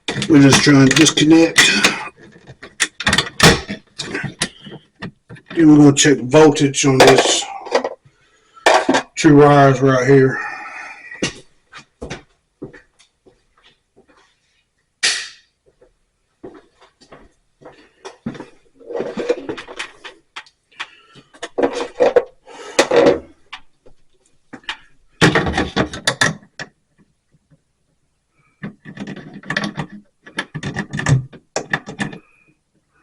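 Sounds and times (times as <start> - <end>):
hands and tools working on wires: 0.0 - 5.8, 18.0 - 27.7, 28.4 - 33.0.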